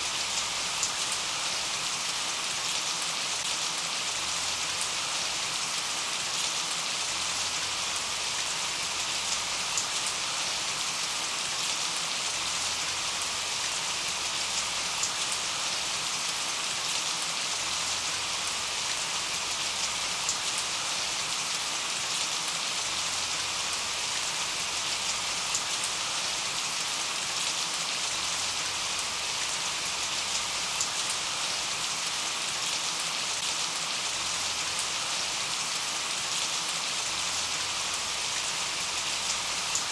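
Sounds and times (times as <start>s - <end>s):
rain pattering on a surface: 0.0s - 39.9s.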